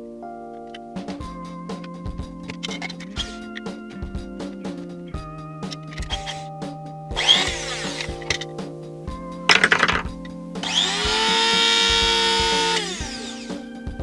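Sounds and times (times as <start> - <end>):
background music: 0.0 - 14.0
coffee grinder motor spinning: 7.2 - 8.1, 10.7 - 13.5.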